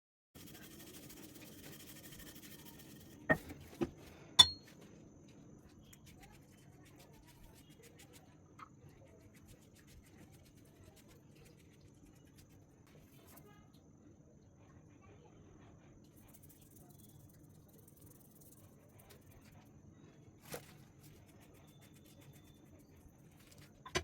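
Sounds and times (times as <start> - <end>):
dishware clinking: 4.4 - 4.7.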